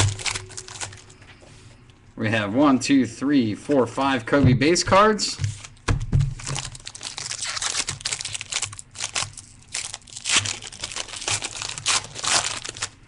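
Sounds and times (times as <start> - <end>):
cards and foil wrappers crinkling: 0.0 - 1.4, 5.3 - 13.0.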